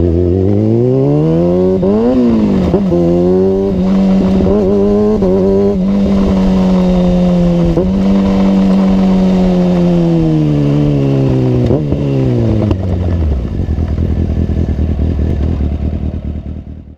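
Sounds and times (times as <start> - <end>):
motorcycle engine revving: 0.0 - 16.9.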